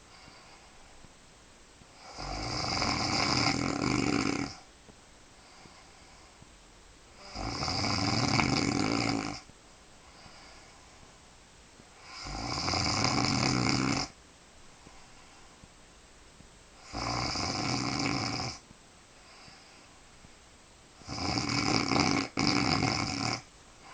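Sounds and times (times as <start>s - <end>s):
woman snoring loudly: 2.0s - 4.6s, 7.2s - 9.5s, 12.0s - 14.2s, 16.8s - 18.6s, 21.0s - 23.5s.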